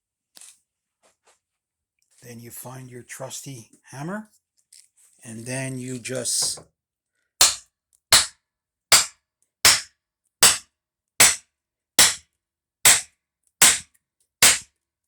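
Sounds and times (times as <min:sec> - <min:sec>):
hammer striking wood: 0:07.4 - 0:09.1, 0:09.7 - 0:10.6, 0:11.2 - 0:11.4, 0:12.0 - 0:12.2, 0:12.9 - 0:13.8, 0:14.4 - 0:14.6.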